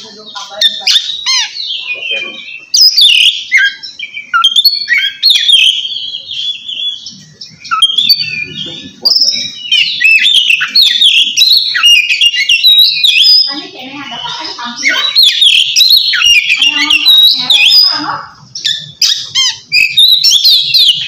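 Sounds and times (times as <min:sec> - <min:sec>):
bird singing clear whistles: 0:18.6 - 0:21.0.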